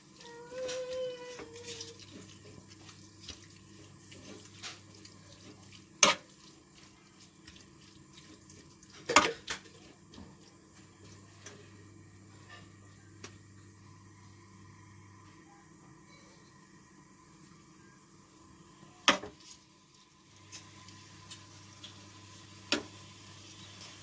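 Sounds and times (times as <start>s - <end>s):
food frying in oil: 0.0s - 12.6s, 19.0s - 24.0s.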